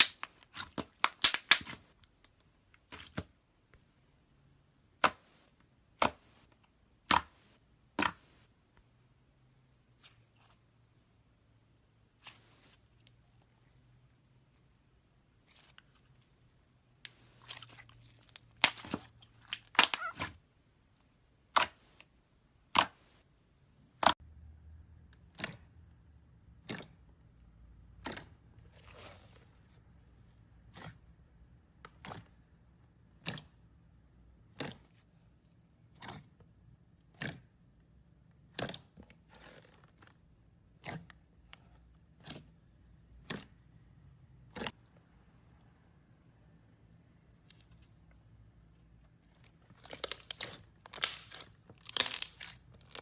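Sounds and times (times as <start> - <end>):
slime clicking and popping: 0.0 - 2.3.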